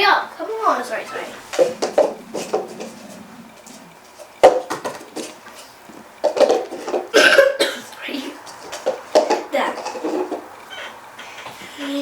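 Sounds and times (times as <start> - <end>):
objects clattering on hard surface: 1.1 - 7.6, 8.4 - 10.5.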